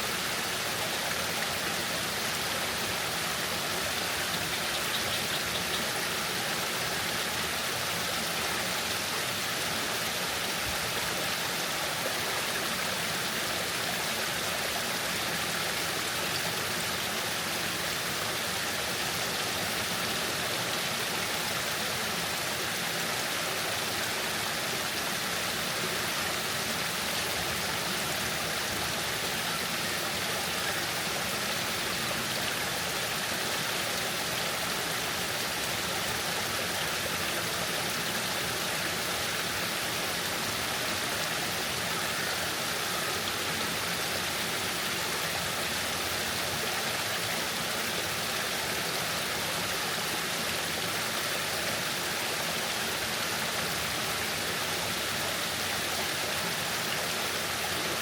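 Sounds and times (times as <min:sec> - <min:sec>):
waterfall rushing: 0:00.0 - 0:58.0.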